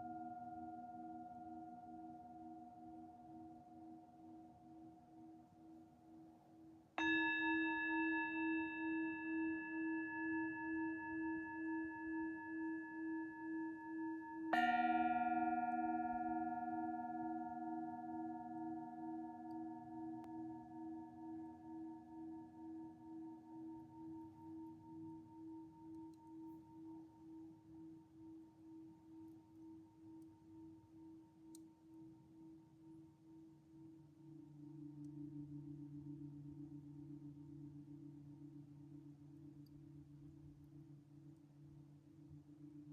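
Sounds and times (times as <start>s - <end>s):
singing bowls ringing: 7.0s - 25.2s.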